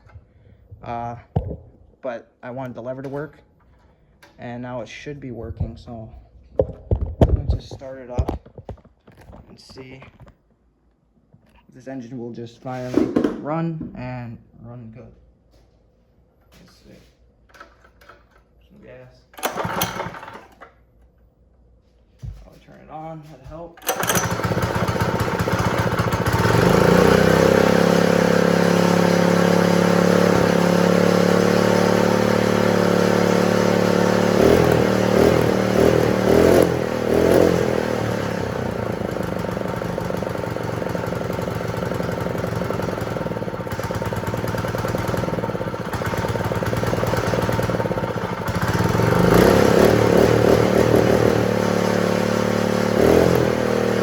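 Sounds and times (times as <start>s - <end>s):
small engine running: 19.4s - 20.6s, 23.8s - 54.0s.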